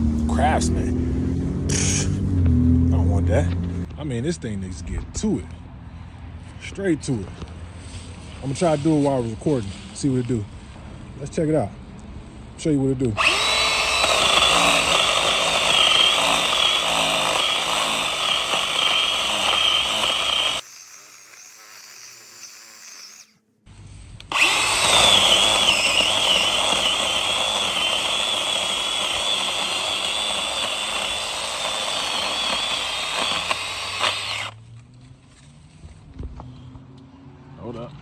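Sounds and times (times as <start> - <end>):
electric chainsaw cutting wood: 13.2 - 23.4, 24.3 - 34.6.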